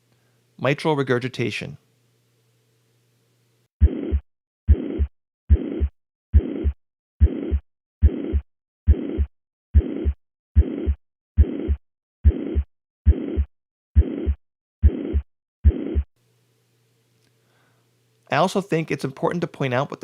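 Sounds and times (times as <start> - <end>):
heartbeat through stethoscope: 3.8 - 16.1
high-pitched heart murmur: 3.8 - 16.1.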